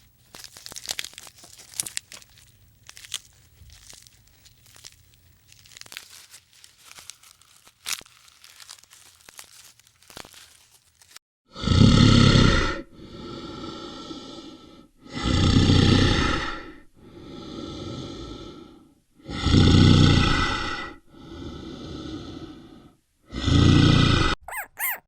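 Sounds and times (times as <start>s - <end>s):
animal calling: 24.4s - 25.0s.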